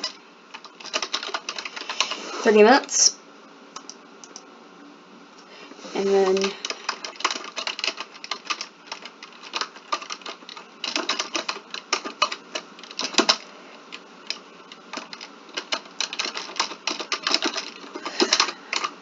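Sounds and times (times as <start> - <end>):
computer keyboard typing: 0.0 - 2.2, 6.3 - 19.0.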